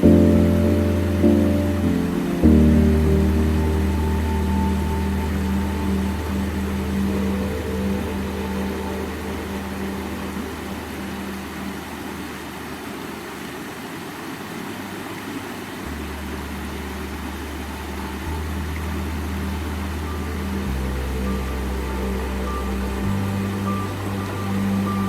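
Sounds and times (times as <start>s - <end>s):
ambient drone music: 0.0s - 13.0s, 15.8s - 25.0s.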